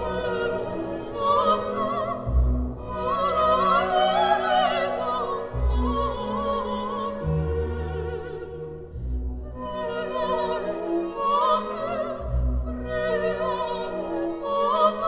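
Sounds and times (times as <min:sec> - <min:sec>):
operatic singing: 0:00.0 - 0:15.0
orchestra: 0:00.0 - 0:15.0.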